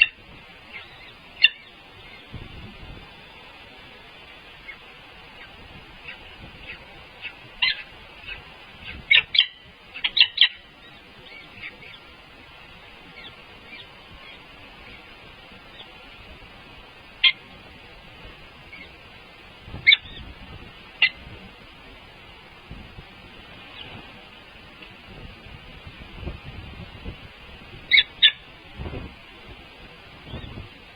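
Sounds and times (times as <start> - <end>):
bird chirps: 0.0 - 2.3, 4.6 - 12.1
steady background hiss: 0.0 - 30.9.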